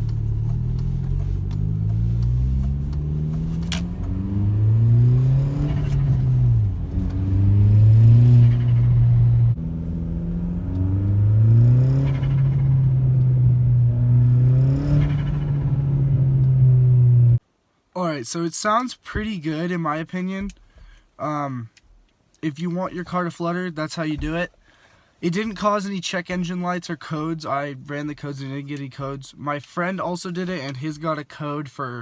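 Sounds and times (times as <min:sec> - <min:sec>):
car engine revving: 0:00.0 - 0:17.4.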